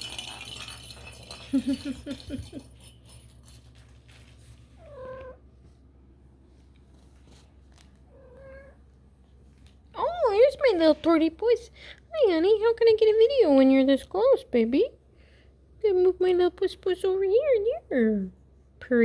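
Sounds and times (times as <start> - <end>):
rattling clatter: 0.0 - 3.9.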